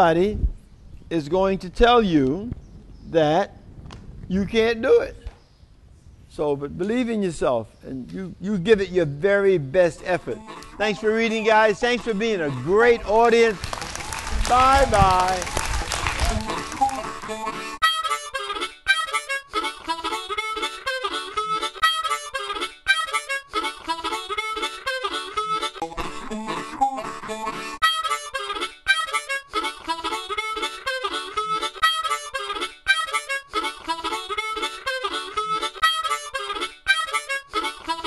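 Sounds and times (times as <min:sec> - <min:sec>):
instrumental music with bright melody: 0:16.9 - 0:38.0.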